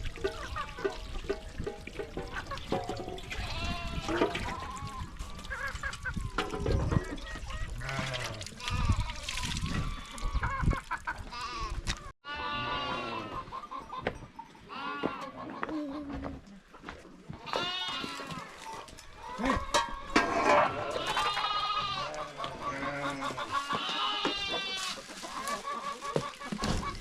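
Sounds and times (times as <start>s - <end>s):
goats bleating: 3.3s - 5.3s, 7.7s - 10.6s, 11.2s - 13.6s, 14.7s - 15.7s, 17.4s - 26.3s.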